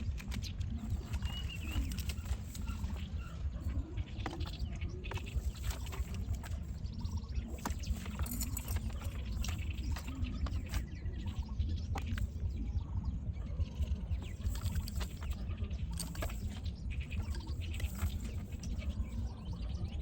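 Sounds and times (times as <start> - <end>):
birds chirping: 0.0 - 20.0
steady low rumble: 0.0 - 20.0.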